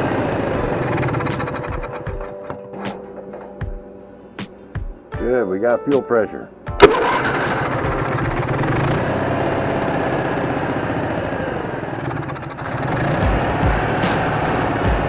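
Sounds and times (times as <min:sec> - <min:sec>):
generator engine running: 0:12.7 - 0:15.0.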